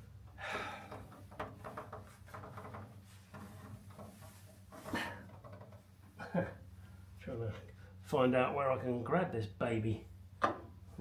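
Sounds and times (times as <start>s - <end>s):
faint rustling: 1.0s - 6.0s.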